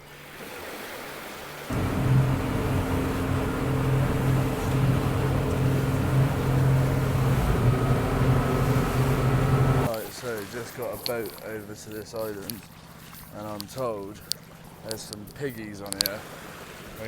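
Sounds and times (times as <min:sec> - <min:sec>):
boat engine humming: 0:01.7 - 0:09.9.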